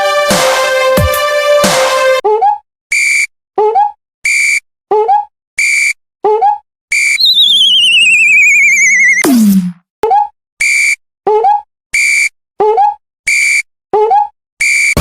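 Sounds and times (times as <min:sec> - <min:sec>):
wavering whistle sliding down: 0:06.9 - 0:09.3
quick rising chirps: 0:07.0 - 0:09.3
short high beeps: 0:07.1 - 0:09.3.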